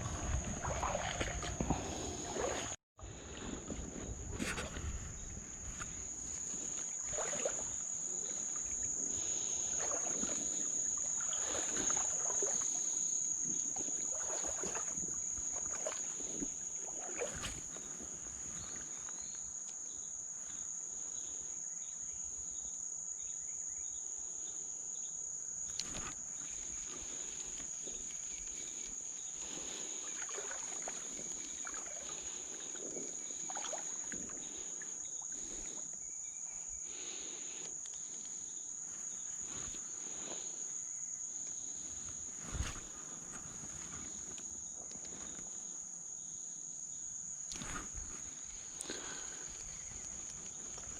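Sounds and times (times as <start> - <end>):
creek water splashing: 0.0 - 19.2, 25.8 - 36.0, 47.5 - 50.9
insect chorus droning: 0.0 - 50.9.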